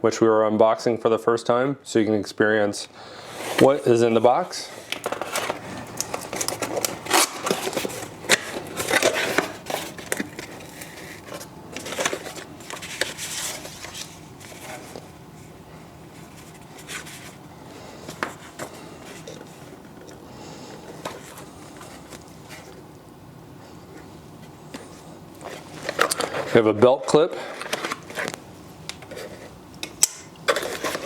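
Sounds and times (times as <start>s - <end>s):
packaging crinkling and clicking: 4.9s - 14.2s, 25.4s - 26.6s, 27.5s - 29.2s, 29.8s - 31.0s.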